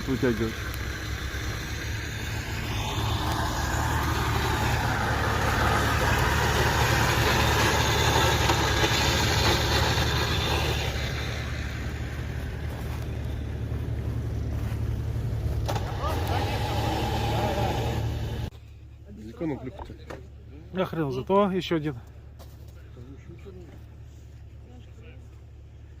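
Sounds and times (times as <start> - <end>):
off-road vehicle engine running: 0.0 - 26.0
rushing noise: 0.9 - 13.6.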